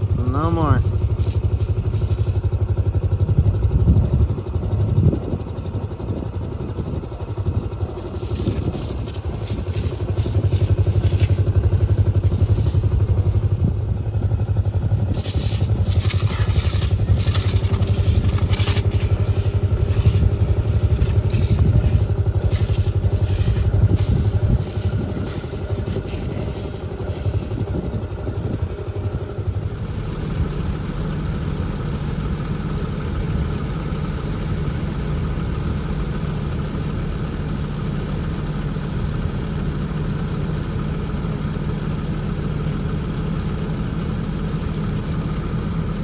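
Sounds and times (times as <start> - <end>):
vehicle engine running: 0.0 - 46.0
rattling: 8.0 - 27.8.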